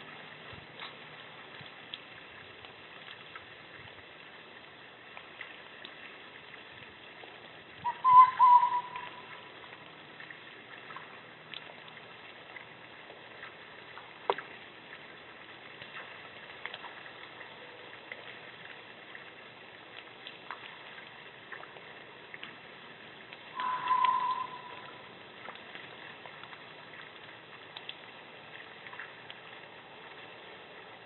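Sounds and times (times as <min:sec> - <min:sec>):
animal whistle-like call: 0:07.8 - 0:09.4, 0:23.5 - 0:25.0.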